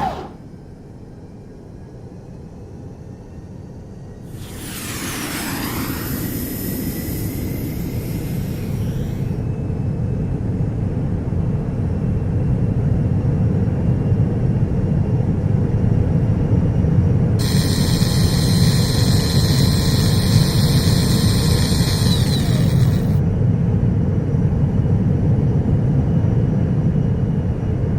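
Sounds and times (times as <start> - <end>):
high jet whine: 0.0 - 0.5, 3.8 - 10.8, 17.4 - 23.2
jet engine rumble: 0.0 - 27.9.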